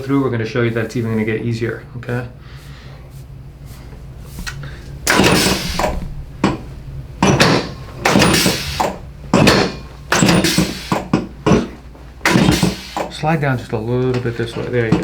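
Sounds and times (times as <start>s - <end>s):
loud mechanical clunks: 5.0s - 13.2s.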